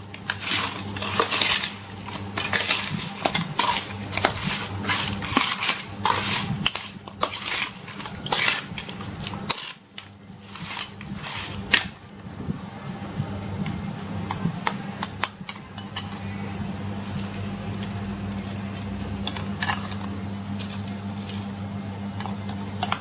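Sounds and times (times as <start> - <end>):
utensils scraping metal pan: 0.0 - 12.0
steady low hum: 0.0 - 23.0.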